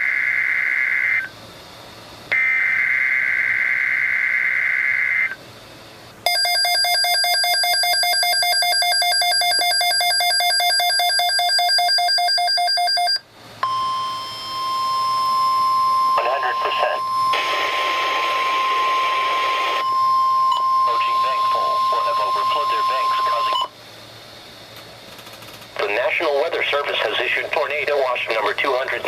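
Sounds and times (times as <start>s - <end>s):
steady warning alarm tone: 0.0s - 1.4s, 2.3s - 5.4s, 6.2s - 23.8s
pulsing electronic alarm beep: 6.2s - 23.7s.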